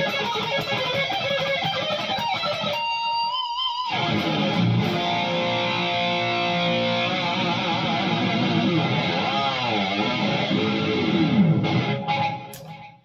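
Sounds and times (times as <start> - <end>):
electric guitar lead line: 0.0 - 13.0
guitar string handling clicks: 12.4 - 13.0.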